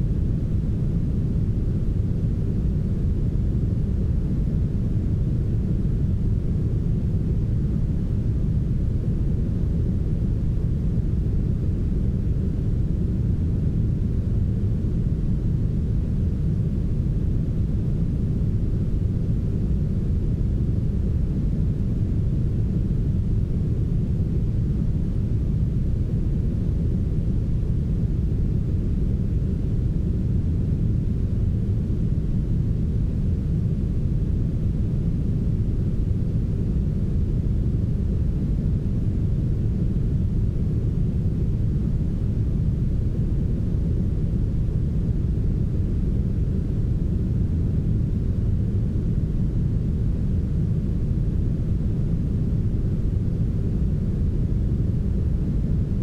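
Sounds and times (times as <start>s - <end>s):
deep rumbling brown noise: 0.0s - 56.0s.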